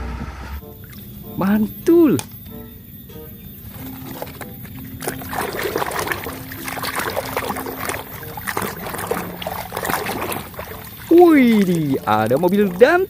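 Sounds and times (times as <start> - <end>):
water splashing and trickling: 3.6 - 13.0.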